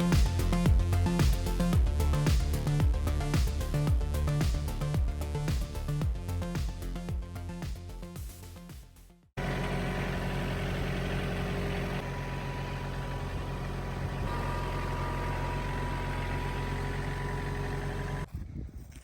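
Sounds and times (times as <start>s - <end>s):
engine running with low hum: 9.4s - 18.3s.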